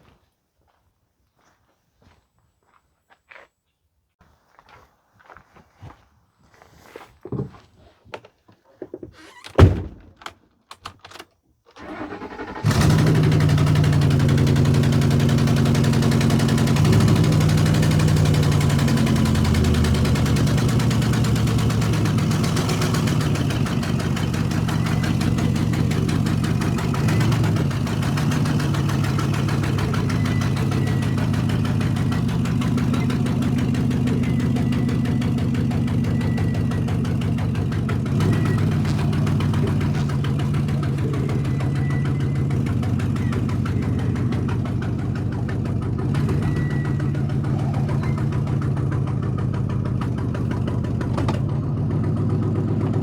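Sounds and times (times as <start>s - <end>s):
pickup engine idling: 11.8s - 53.0s.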